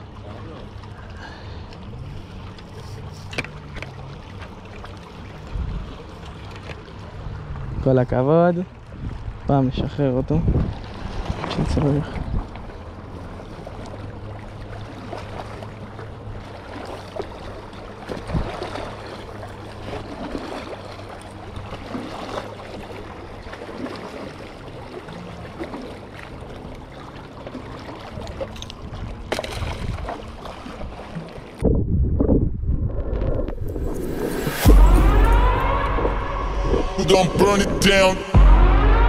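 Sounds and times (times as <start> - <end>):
water sloshing against boat: 0.0 - 39.0
low steady hum: 28.2 - 39.0.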